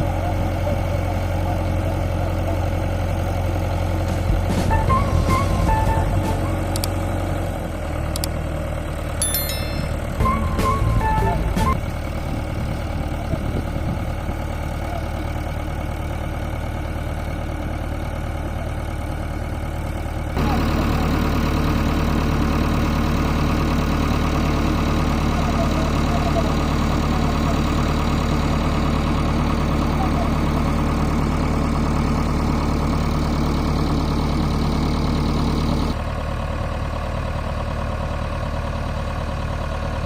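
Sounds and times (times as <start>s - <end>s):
diesel engine idling: 0.0s - 40.0s.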